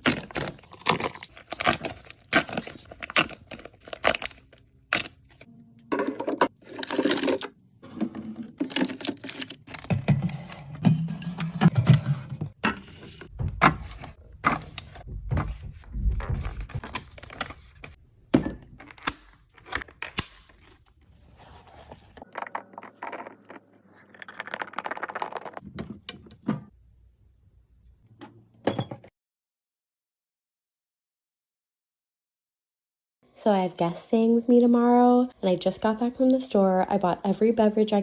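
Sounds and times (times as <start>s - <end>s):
items knocking and clattering: 0.0s - 4.3s, 5.8s - 20.8s, 21.8s - 26.7s.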